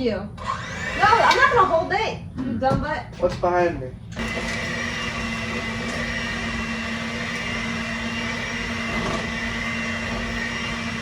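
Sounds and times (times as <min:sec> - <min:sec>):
electric hand mixer running: 0:00.4 - 0:01.8, 0:04.2 - 0:11.0.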